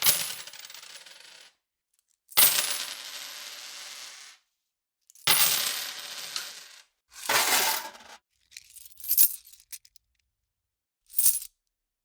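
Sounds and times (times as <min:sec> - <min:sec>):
coins clinking down: 0:05.3 - 0:10.0, 0:11.2 - 0:11.5
coins spilling and jingling: 0:07.2 - 0:10.0, 0:11.2 - 0:11.5.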